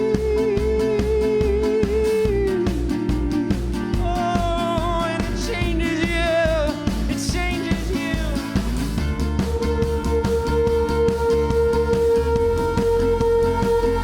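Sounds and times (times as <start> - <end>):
bass: 0.0 - 14.0
steady drum beat: 0.0 - 14.0
lead melody with vibrato: 9.5 - 14.0.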